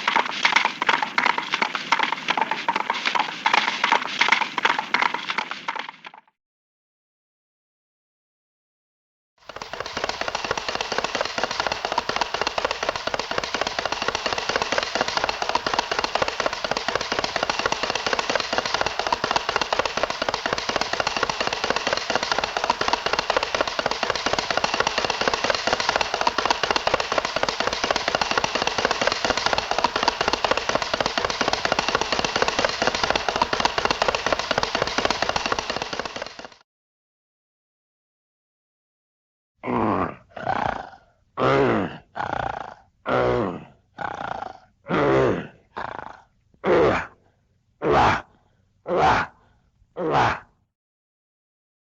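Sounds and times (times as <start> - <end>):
rapid clatter of clicks and rattles: 0.0 - 6.2, 9.4 - 36.6.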